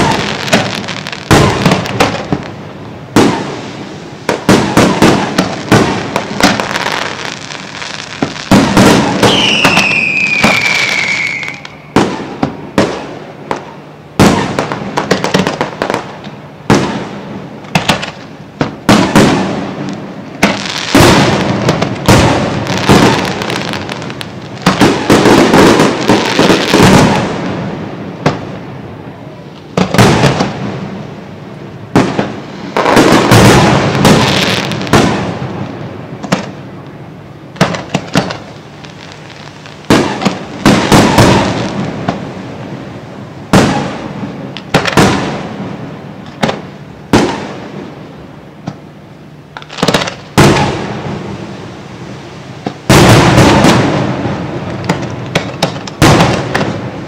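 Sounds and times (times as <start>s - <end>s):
falling firework whistle: 0.0s - 1.8s, 8.0s - 12.9s
fireworks bangs: 0.0s - 48.8s, 49.5s - 57.0s.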